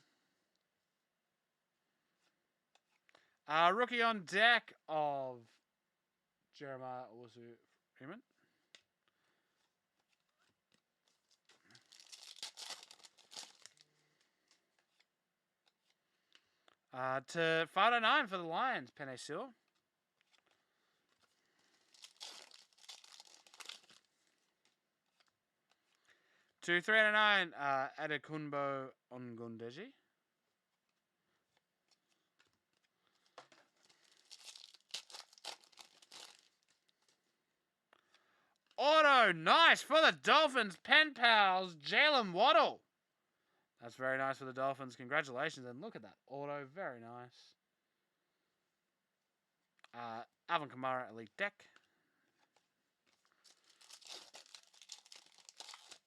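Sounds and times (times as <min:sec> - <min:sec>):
card pack wrapper tearing: 0:11.1 - 0:13.8, 0:21.8 - 0:24.1, 0:33.5 - 0:37.2, 0:53.1 - 0:56.0.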